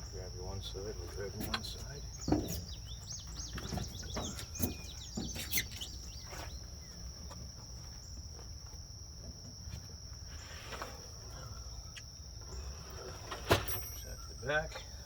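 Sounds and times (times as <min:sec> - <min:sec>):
high-pitched insect trilling: 0:00.0 - 0:10.6, 0:13.7 - 0:15.0.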